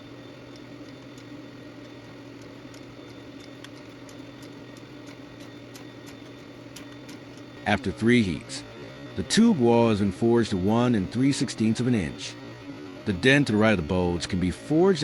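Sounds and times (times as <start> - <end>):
steady low hum: 0.0 - 15.0
faint irregular ticks: 0.5 - 7.6.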